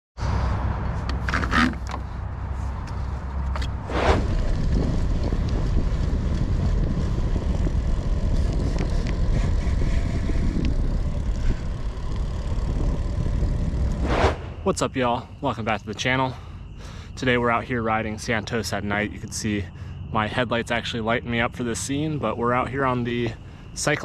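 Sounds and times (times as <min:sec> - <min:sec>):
wind buffeting the microphone: 0:03.2 - 0:14.8
tyres rumbling over dirt: 0:03.5 - 0:16.3.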